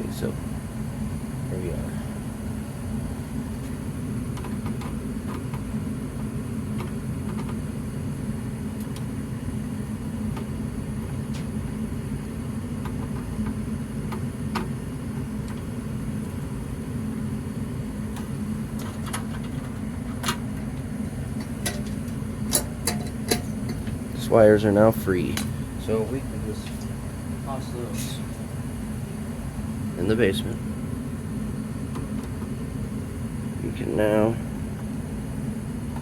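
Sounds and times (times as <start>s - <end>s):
low mechanical hum: 0.0s - 36.0s.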